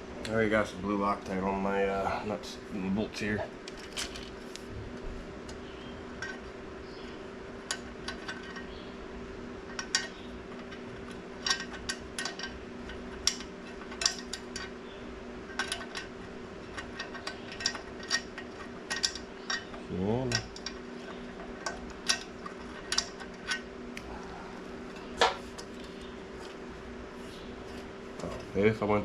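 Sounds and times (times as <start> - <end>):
low steady hum: 0.0 - 29.0
metal tools clicking and clinking: 7.6 - 8.7, 9.7 - 14.8, 15.5 - 23.6.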